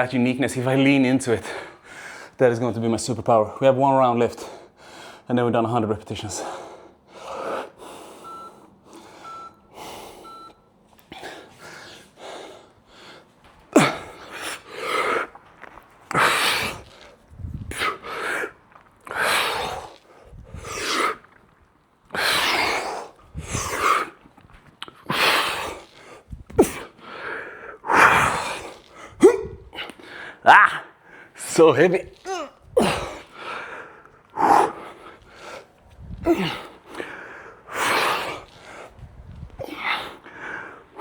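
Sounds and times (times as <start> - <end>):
man breathing hard: 1.4 - 2.4, 4.4 - 5.3, 6.4 - 10.5, 11.1 - 21.2, 25.0 - 30.4, 32.7 - 41.0
electronic timer beeps: 8.2 - 10.7.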